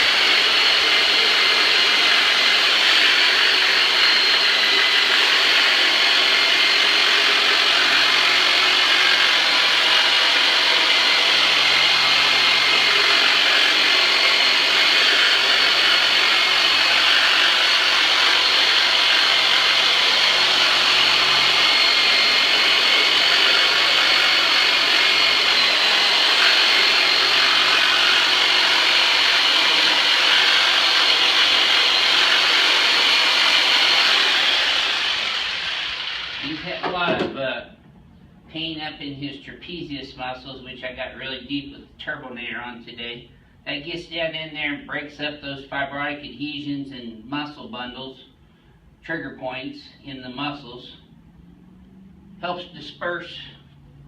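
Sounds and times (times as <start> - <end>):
handheld massager motor buzzing: 0.0 - 36.6.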